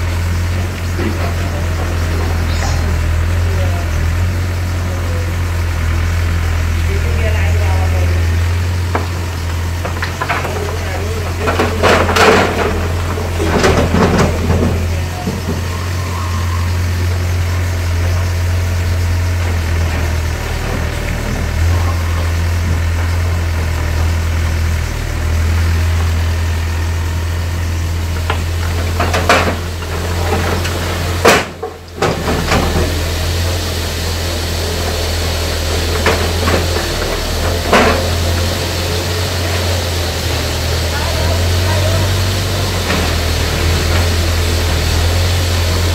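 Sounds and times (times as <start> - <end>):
excavator diesel engine running: 0.0 - 45.9
clattering demolition knocks: 8.2 - 16.0, 17.0 - 33.6, 34.5 - 45.9.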